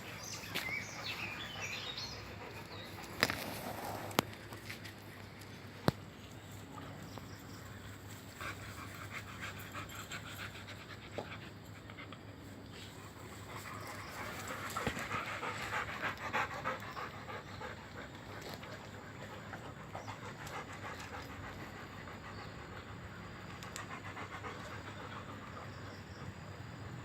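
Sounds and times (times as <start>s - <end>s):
dog panting quickly: 8.4s - 26.8s.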